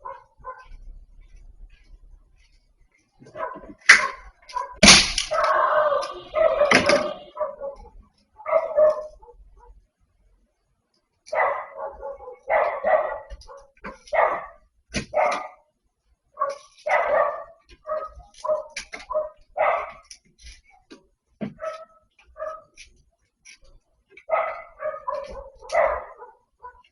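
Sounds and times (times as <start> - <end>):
dog barking: 0.0 - 0.8, 3.2 - 9.9, 11.3 - 15.7, 16.3 - 20.1, 21.5 - 22.8, 24.2 - 26.9.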